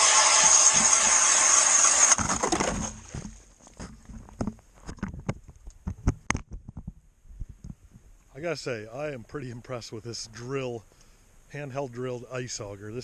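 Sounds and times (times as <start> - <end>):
ice auger grinding: 0.0 - 3.3.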